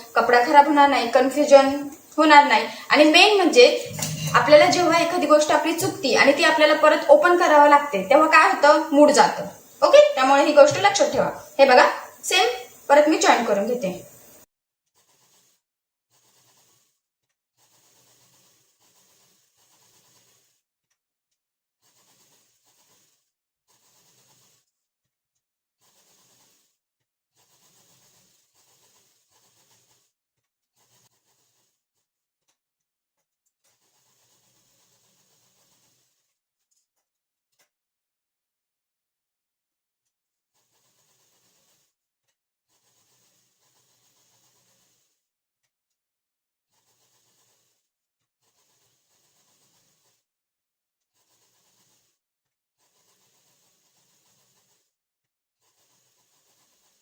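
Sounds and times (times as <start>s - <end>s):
sewing machine stitching: 0.0s - 14.4s, 15.0s - 17.0s, 17.6s - 20.6s, 21.8s - 24.8s, 25.8s - 30.1s, 30.7s - 31.8s, 33.5s - 36.7s, 40.5s - 42.0s, 42.7s - 45.2s, 46.7s - 50.2s, 51.1s - 52.2s, 52.8s - 54.9s, 55.6s - 57.0s.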